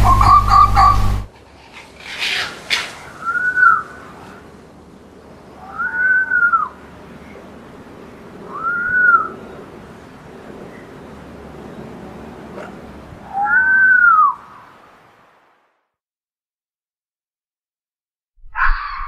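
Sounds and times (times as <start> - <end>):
fox whining calls: 0.0 - 4.4.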